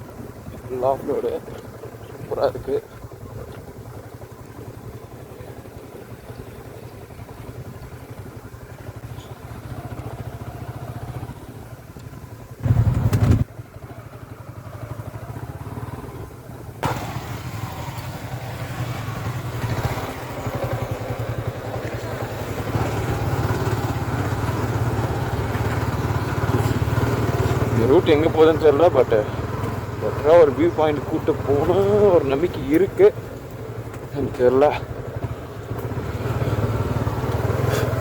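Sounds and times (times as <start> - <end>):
motorcycle engine running: 0.0 - 38.0
loud rumble: 12.6 - 13.6.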